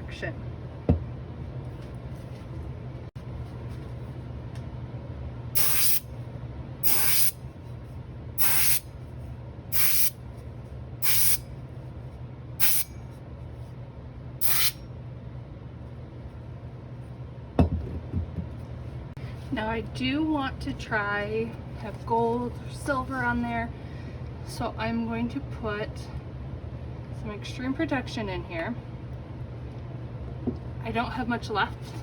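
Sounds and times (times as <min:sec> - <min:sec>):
low steady hum: 0:00.0 - 0:32.0
airbrush hissing bursts: 0:05.6 - 0:06.0, 0:06.8 - 0:07.4, 0:08.4 - 0:08.9, 0:09.7 - 0:10.2, 0:11.0 - 0:11.4, 0:12.6 - 0:12.9, 0:14.4 - 0:14.8
knock: 0:17.6 - 0:18.5.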